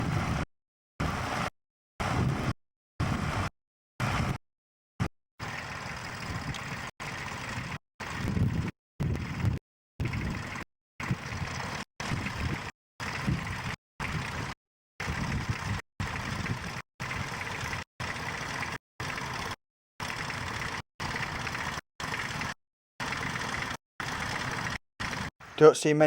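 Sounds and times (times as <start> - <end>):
tractor engine running: 5.4 - 25.9.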